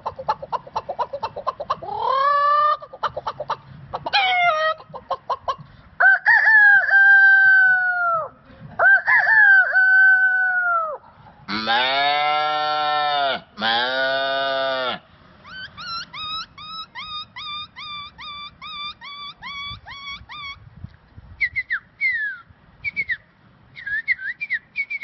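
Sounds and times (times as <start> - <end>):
man imitating chicken clucking: 0.0 - 20.6
man imitating rooster crows: 6.0 - 15.0.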